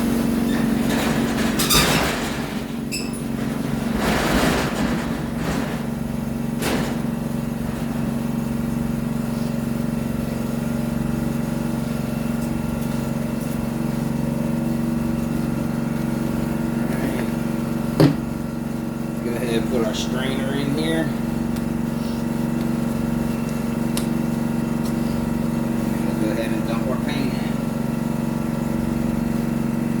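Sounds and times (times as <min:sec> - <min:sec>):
air compressor and fan hum: 0:00.0 - 0:30.0
handling clatters: 0:00.4 - 0:08.4.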